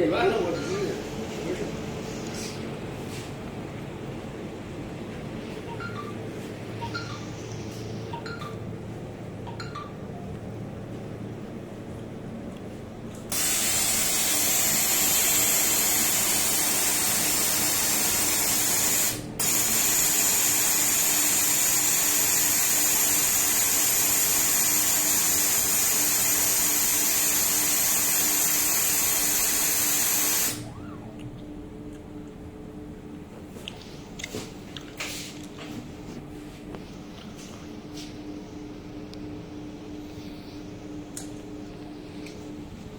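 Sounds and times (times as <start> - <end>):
laser welding machine hissing: 13.3 - 30.7
faint low hum: 30.6 - 42.9.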